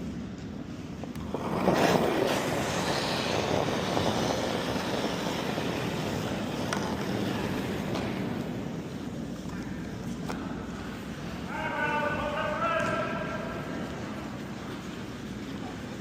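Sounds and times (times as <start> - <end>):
curling stone sliding on ice: 1.1 - 10.2.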